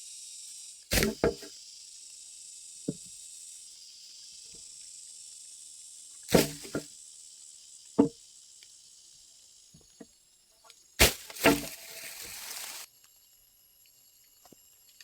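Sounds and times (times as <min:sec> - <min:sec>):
insect chorus: 0:00.0 - 0:15.0
sharp wooden knocks: 0:01.0 - 0:01.5.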